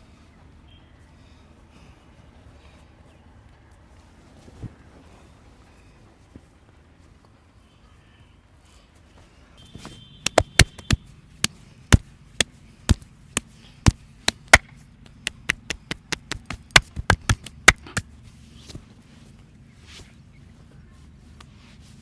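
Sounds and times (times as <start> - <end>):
hands slapping in massage: 9.8 - 18.1.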